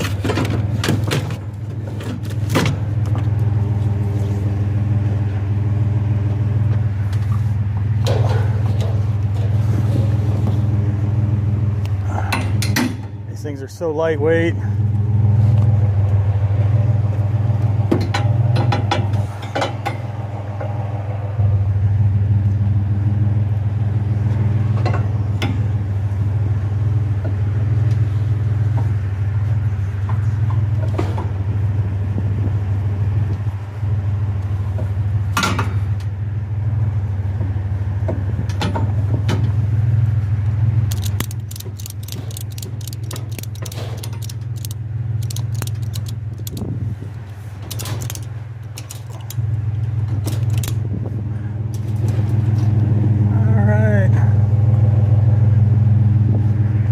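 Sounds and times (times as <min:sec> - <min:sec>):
vehicle engine idling: 0:39.6 - 0:56.0
metal scrap knocking and rattling: 0:40.9 - 0:49.5, 0:50.3 - 0:50.8
quick clicks: 0:40.9 - 0:49.6, 0:50.3 - 0:50.8.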